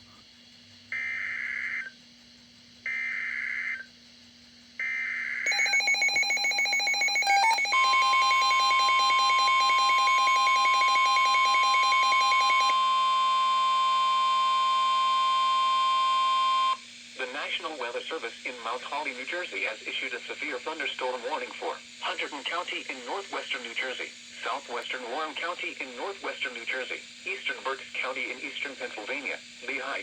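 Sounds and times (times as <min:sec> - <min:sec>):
rapidly pulsing electronic alarm: 0:00.9 - 0:02.0, 0:02.8 - 0:04.0, 0:04.8 - 0:16.8
steady warning tone: 0:04.8 - 0:17.4
screeching digital header bursts: 0:05.5 - 0:12.8.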